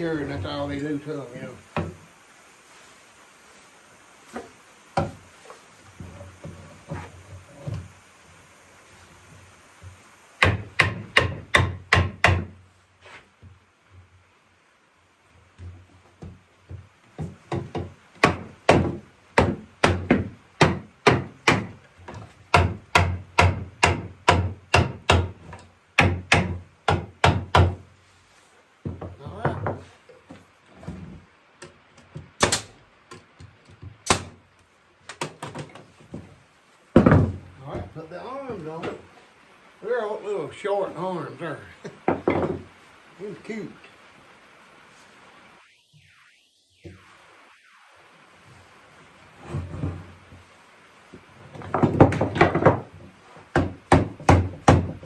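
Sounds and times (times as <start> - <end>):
wooden thump: 1.7 - 2.0, 4.3 - 5.2, 35.2 - 37.9, 42.0 - 42.7, 51.5 - 55.0
wooden knocks and clacks: 15.6 - 27.8, 28.8 - 34.4, 35.1 - 38.0, 41.9 - 42.7, 51.1 - 55.0.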